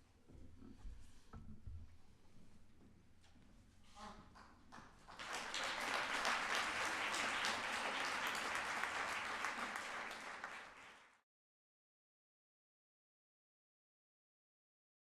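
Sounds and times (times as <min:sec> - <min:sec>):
congregation applauding: 0:05.0 - 0:11.2.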